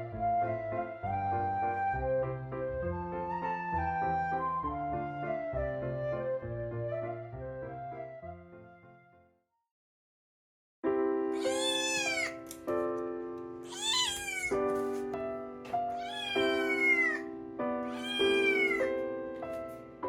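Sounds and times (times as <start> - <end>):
background music: 0.0 - 8.9
cat meowing: 11.4 - 12.6, 13.7 - 14.7, 15.9 - 19.0.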